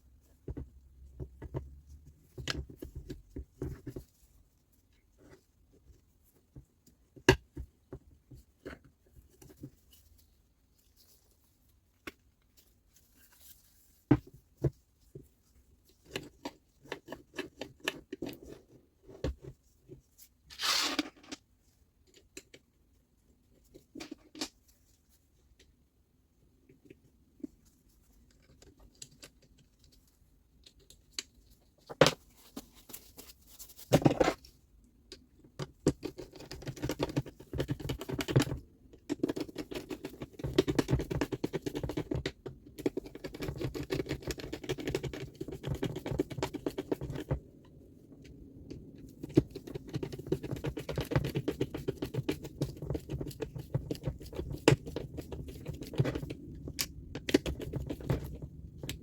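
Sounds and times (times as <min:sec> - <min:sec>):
scratching and clicking on saw parts: 0:27.9 - 0:59.0.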